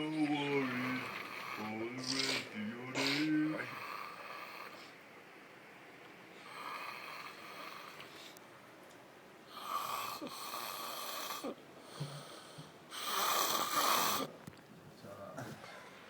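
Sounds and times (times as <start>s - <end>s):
man snoring heavily: 0.0s - 4.8s, 6.4s - 8.0s, 9.5s - 12.2s, 13.0s - 14.3s.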